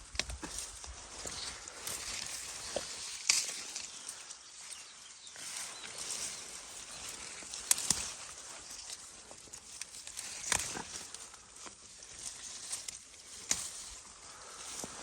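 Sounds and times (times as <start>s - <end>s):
bean plants rustling and crackling: 0.0s - 15.0s
sharp snaps of pods picked: 2.6s - 3.9s, 7.5s - 8.1s, 9.8s - 11.2s, 12.7s - 14.0s.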